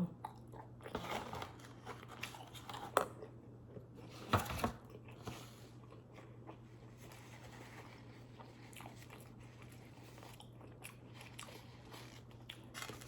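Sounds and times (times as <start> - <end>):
food crunching: 4.8 - 13.0.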